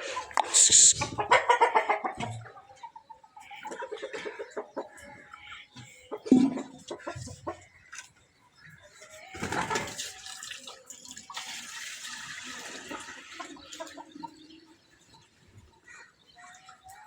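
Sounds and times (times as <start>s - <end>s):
milk pouring into a container: 10.0s - 13.5s.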